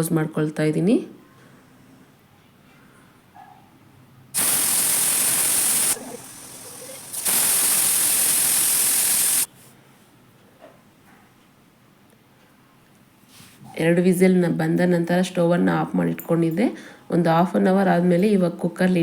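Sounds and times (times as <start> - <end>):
pressure cooker whistle hissing: 4.4 - 9.5.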